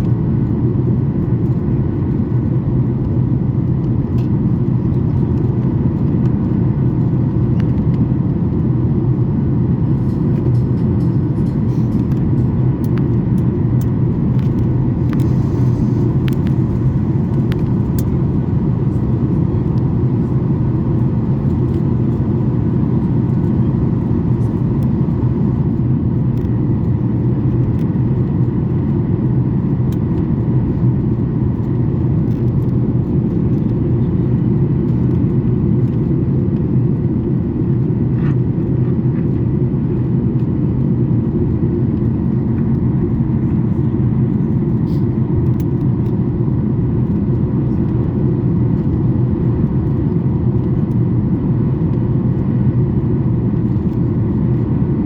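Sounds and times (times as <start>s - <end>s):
airflow over fuselage: 0.0s - 48.1s
faint steady hum: 0.0s - 55.0s
jet engines in flight: 0.0s - 55.0s.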